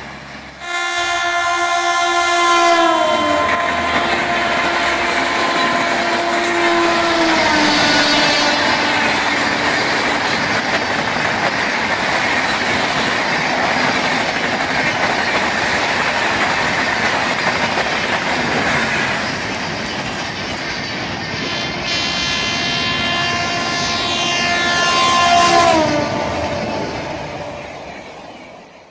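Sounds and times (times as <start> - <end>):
freight train rumble and wheel clatter: 0.0 - 28.9
locomotive horn: 0.6 - 10.3, 21.4 - 27.9.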